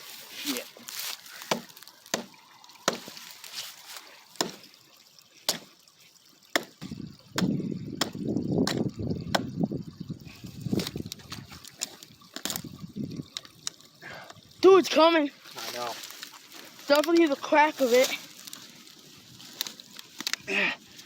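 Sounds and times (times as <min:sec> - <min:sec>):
rough scraping rustling: 0:00.0 - 0:04.6, 0:15.4 - 0:21.0
hammer knocking on tree trunk: 0:01.5 - 0:03.2, 0:04.4 - 0:04.6, 0:06.5 - 0:09.5.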